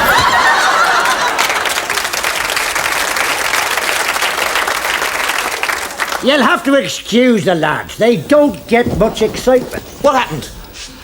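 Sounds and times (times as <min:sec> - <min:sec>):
audience applauding: 0:00.0 - 0:06.8.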